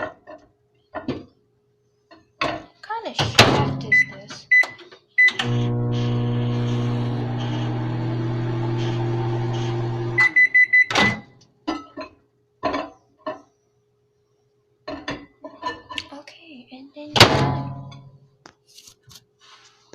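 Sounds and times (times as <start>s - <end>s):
microwave oven humming: 5.3s - 11.4s.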